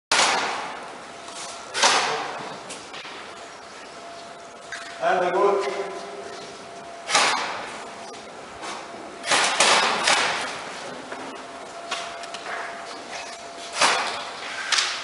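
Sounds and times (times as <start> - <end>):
sharp cracks with echo: 0.1 - 0.8, 1.8 - 2.4, 7.1 - 7.7, 9.2 - 10.6.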